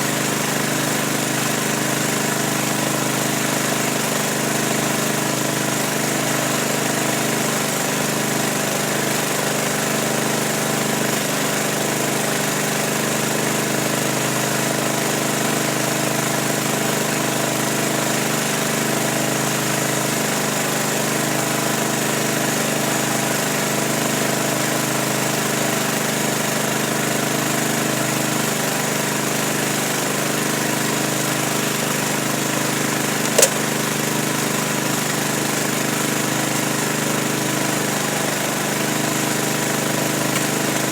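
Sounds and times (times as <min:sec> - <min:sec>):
short sharp click: 0:33.2 - 0:33.6.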